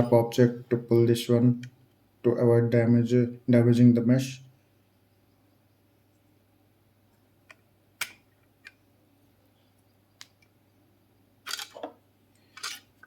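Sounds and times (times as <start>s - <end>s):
faint steady hum: 0.0s - 13.0s
scraping clicks: 11.5s - 13.0s.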